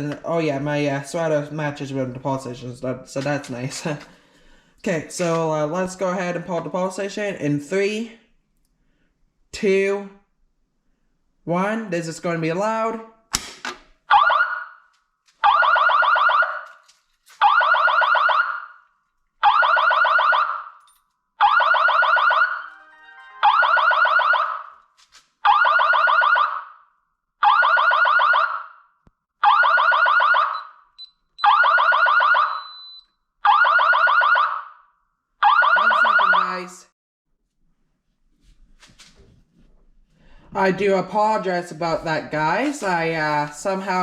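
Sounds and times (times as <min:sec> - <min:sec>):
fire alarm blasts: 0:14.1 - 0:16.8, 0:17.4 - 0:24.8, 0:25.4 - 0:36.8.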